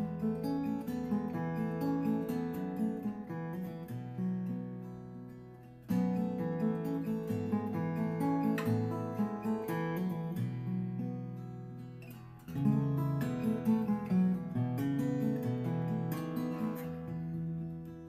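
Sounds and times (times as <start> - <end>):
solo plucked string folk music: 0.0 - 18.0.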